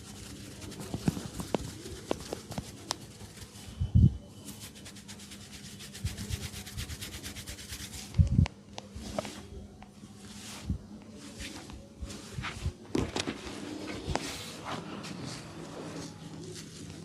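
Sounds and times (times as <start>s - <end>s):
hands rubbing hair: 0.0s - 3.8s, 4.5s - 8.2s.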